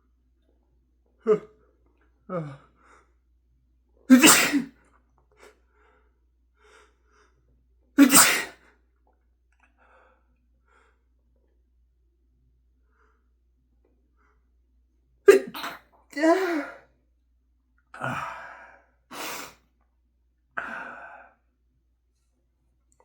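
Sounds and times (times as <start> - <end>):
man sneezing: 4.1 - 4.7, 8.0 - 8.6, 15.3 - 16.8.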